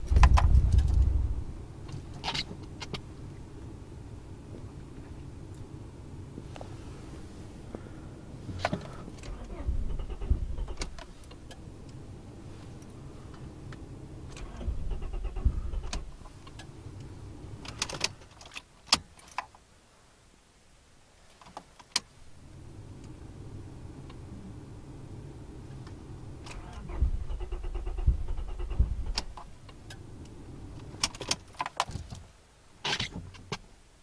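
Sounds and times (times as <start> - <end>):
car engine cranking on starter: 7.7 - 18.6, 22.4 - 31.5.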